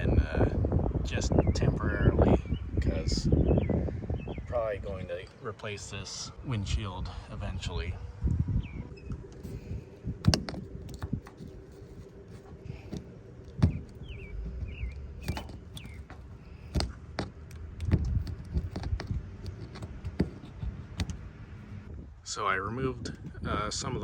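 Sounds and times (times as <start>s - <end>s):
sealant scraping clicks and taps: 10.2s - 21.3s.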